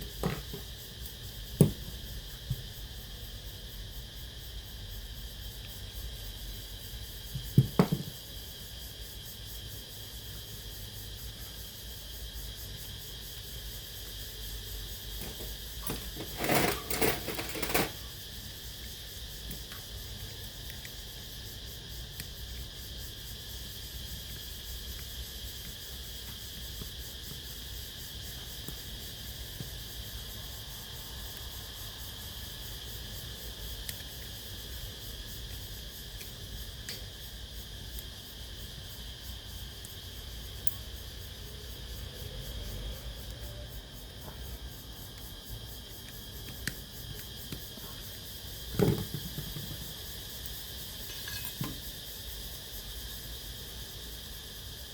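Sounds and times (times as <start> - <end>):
cassette player hiss and whine: 15.2 - 18.1.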